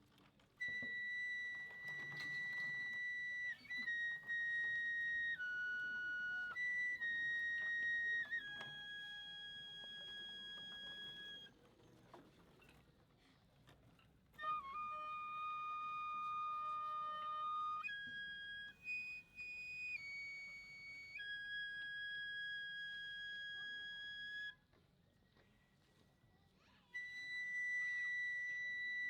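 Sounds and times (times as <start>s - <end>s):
bamboo flute long high notes: 0.6s - 11.6s, 14.4s - 24.7s, 26.8s - 29.0s.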